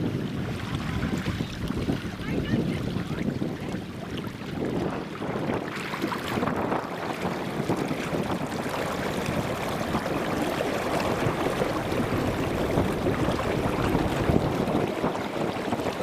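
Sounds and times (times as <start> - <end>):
water washing against boat hull: 0.0 - 16.0
wind noise on microphone: 0.0 - 16.0.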